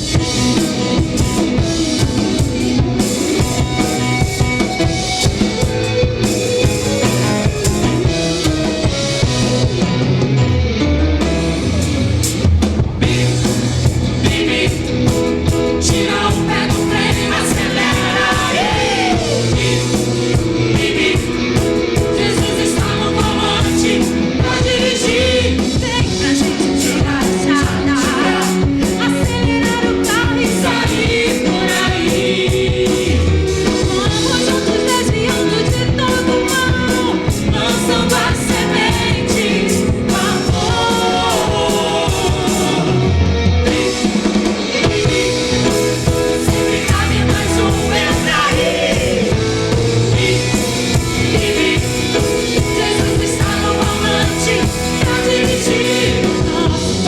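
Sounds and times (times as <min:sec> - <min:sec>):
band with drum kit: 0:00.0 - 0:57.0
children's song singing: 0:13.0 - 0:57.0.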